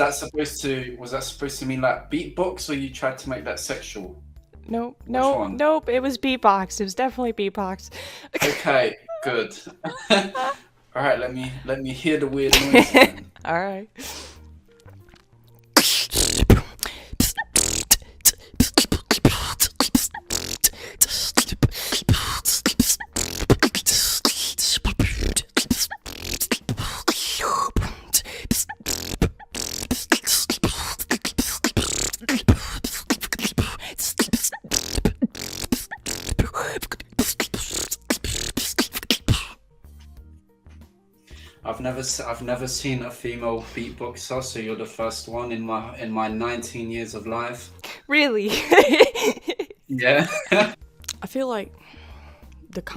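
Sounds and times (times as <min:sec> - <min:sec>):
woman beatboxing: 0:15.8 - 0:39.6, 0:50.6 - 0:51.6.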